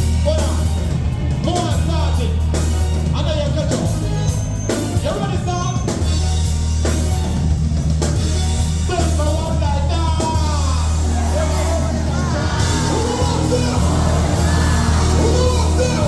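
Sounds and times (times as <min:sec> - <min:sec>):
loud music with heavy bass: 0:00.0 - 0:16.0
drum beat: 0:06.1 - 0:16.0
person singing: 0:11.1 - 0:16.0.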